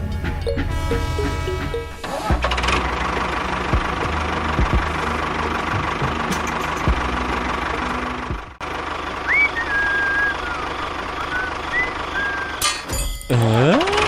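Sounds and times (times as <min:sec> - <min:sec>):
engine rumble: 0:00.0 - 0:14.0
thin whistling tones: 0:09.3 - 0:12.6.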